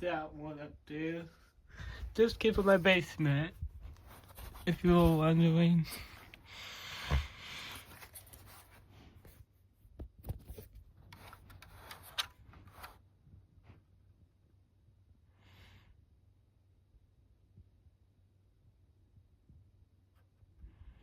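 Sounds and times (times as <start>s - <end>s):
faint rustling: 1.2s - 9.5s
person breathing: 1.6s - 2.2s, 5.9s - 8.1s.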